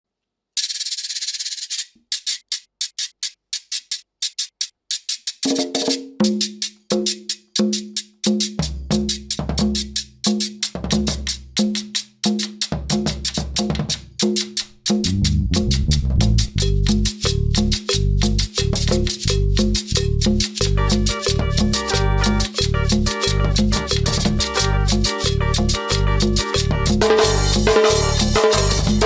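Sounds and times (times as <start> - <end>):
scraped percussion rhythm: 0.6 - 29.0
deep bass: 15.0 - 29.0
accordion chords: 20.6 - 29.0.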